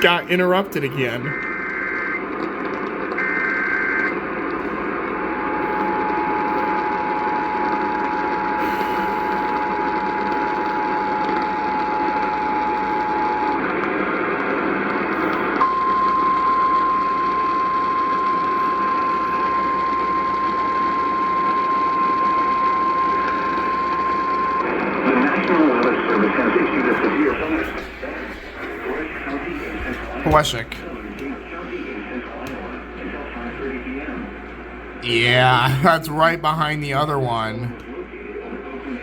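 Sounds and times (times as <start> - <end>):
steady warning tone: 0.0 - 13.7, 15.2 - 25.0
radio static hiss: 0.0 - 15.6, 16.7 - 39.0.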